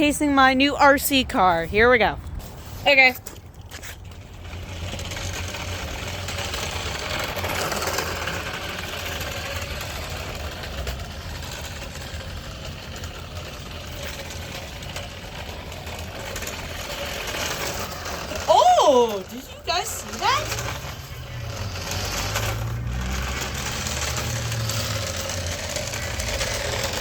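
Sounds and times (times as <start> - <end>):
radio-controlled car motor: 19.3 - 27.0.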